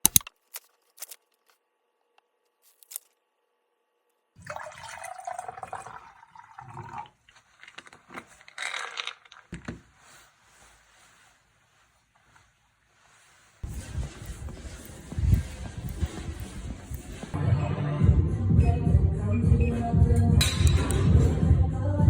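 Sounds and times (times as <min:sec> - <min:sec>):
water running and splashing: 0:04.4 - 0:07.6.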